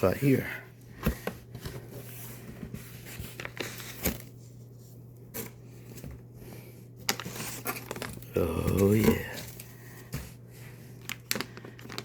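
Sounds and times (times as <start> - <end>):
packaging rustling and tearing: 7.0 - 9.8, 11.0 - 12.0.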